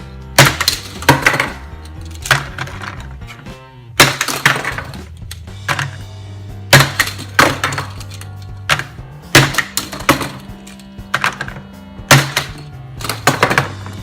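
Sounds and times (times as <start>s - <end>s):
sharp hard hits: 4.0s - 14.0s
steady low bass: 5.2s - 6.8s, 8.0s - 9.4s, 10.4s - 13.1s.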